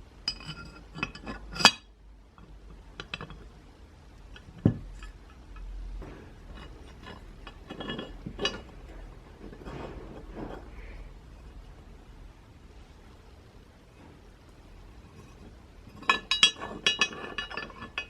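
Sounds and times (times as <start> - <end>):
small metal parts clinking: 15.2 - 18.0.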